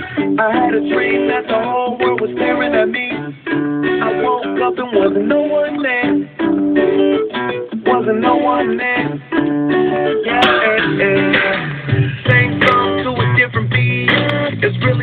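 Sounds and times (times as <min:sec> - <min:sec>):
plucked guitar notes: 0:00.0 - 0:15.0
heavy bass: 0:09.5 - 0:15.0.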